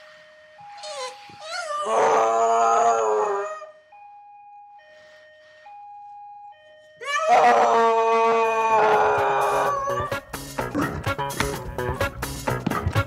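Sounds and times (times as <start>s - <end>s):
dog howling: 1.4s - 3.7s, 7.0s - 10.2s.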